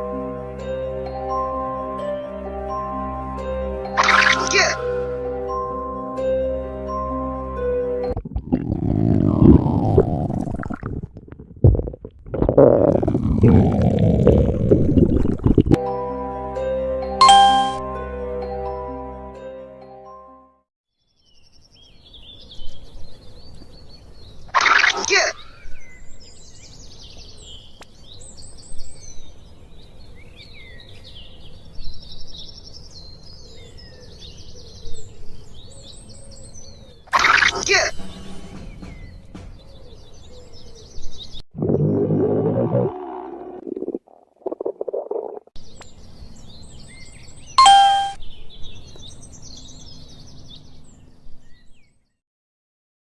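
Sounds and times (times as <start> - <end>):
stomach growl: 8.1 - 15.8, 41.6 - 45.5
bell-like ding: 17.2 - 17.9, 47.6 - 48.2
songbirds chirping: 21.0 - 43.5, 45.6 - 52.2.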